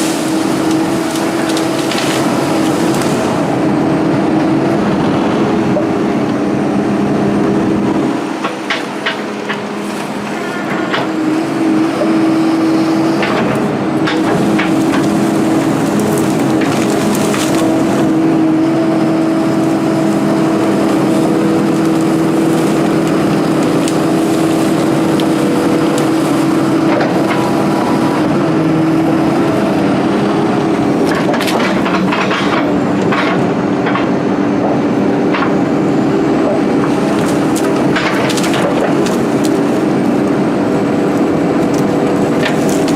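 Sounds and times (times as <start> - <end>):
excavator engine under hydraulic load: 0.0 - 42.9
sharp cracking and snapping: 0.3 - 3.3, 13.2 - 18.0, 20.1 - 27.6, 36.9 - 39.9, 41.1 - 42.9.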